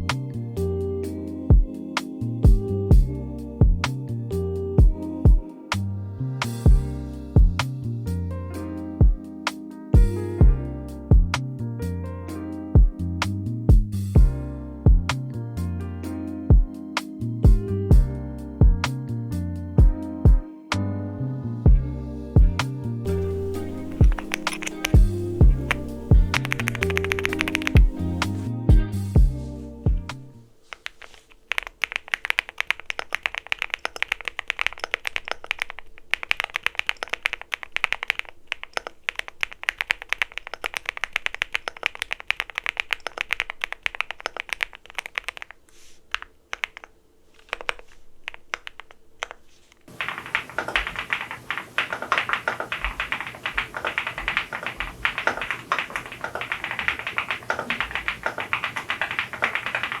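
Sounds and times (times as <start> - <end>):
mechanical keyboard typing: 23.1 - 28.5, 30.7 - 60.0.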